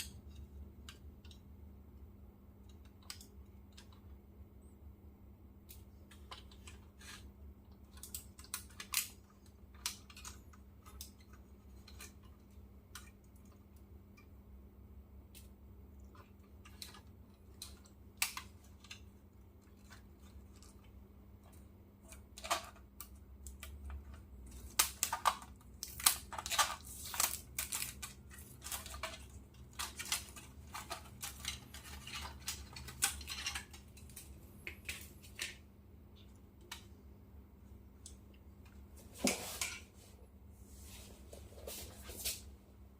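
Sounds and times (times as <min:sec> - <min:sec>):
faint low hum: 0:00.0 - 0:42.9
hands handling model car: 0:16.1 - 0:35.6.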